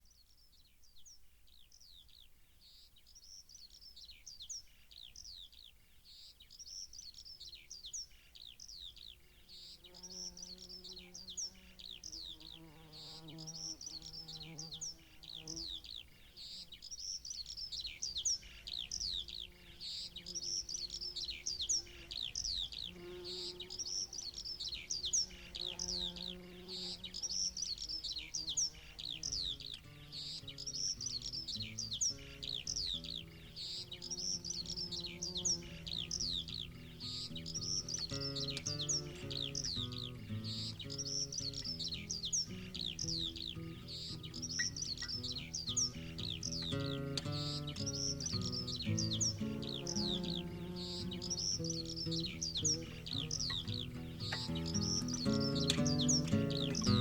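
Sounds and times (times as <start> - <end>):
bird chirping: 0.0 - 57.0
low sustained musical notes: 42.0 - 57.0.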